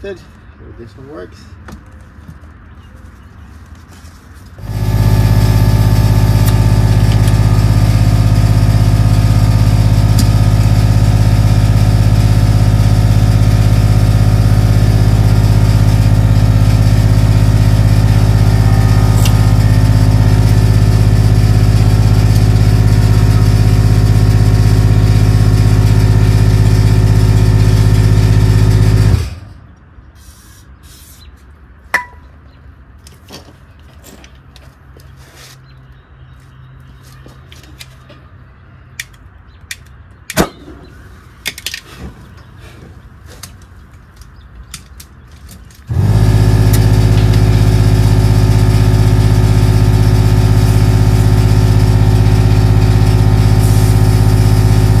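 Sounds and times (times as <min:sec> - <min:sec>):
motor running loudly: 0:04.6 - 0:29.4, 0:45.9 - 0:55.0.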